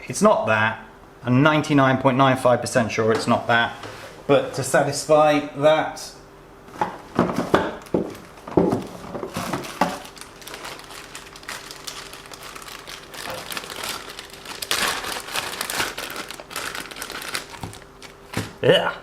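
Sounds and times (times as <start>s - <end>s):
crinkling and rustling: 6.7s - 18.6s.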